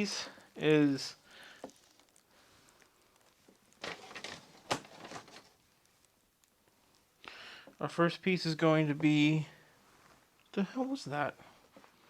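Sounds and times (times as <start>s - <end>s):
rustling of plastic bags: 0.9s - 5.6s.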